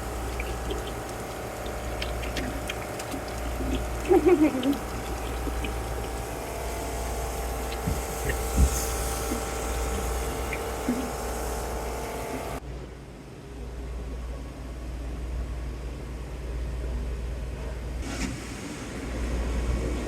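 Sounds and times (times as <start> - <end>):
water splashing in a tank: 0.0 - 12.6, 18.0 - 20.0
machinery hum: 0.0 - 20.0.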